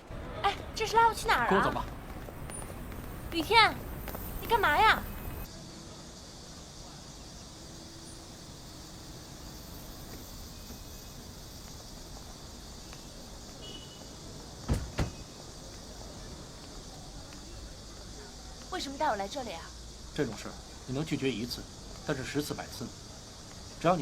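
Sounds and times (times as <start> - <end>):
doors shutting: 14.6 - 15.4.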